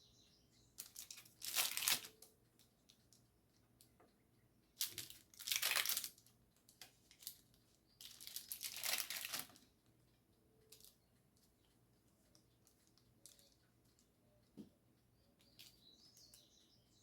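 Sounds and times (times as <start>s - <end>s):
crinkling rustle: 0.8s - 3.2s, 4.8s - 9.7s.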